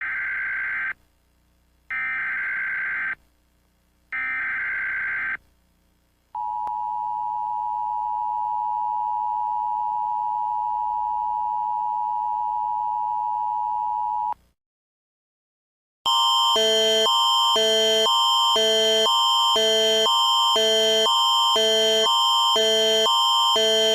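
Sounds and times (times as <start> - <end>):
rapidly alternating alarm tones: 16.1 - 23.9.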